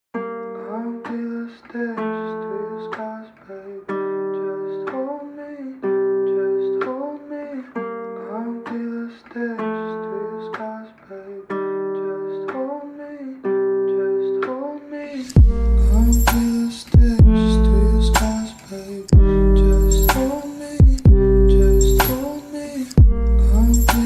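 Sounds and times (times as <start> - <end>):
acoustic guitar chords: 0.2 - 24.0.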